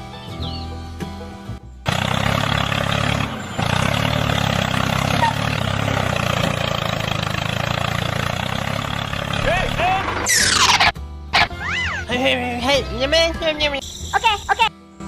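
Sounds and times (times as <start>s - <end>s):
music: 0.0s - 1.9s, 9.4s - 15.0s.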